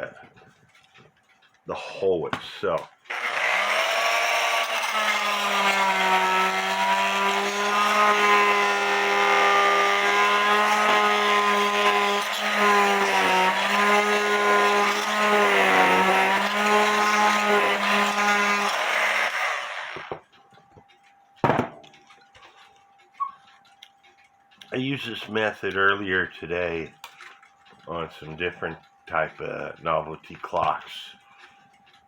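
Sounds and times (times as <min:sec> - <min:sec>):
oscillating multi-tool buzzing: 0:03.0 - 0:20.2.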